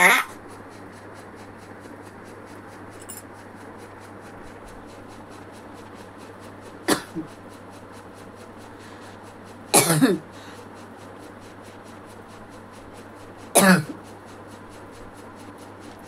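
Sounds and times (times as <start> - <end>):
person coughing: 6.9 - 7.3, 9.8 - 10.3, 13.6 - 14.0.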